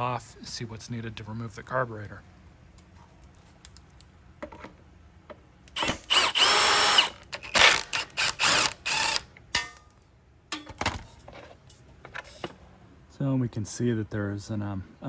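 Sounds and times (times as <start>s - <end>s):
power drill whining: 5.8s - 9.2s.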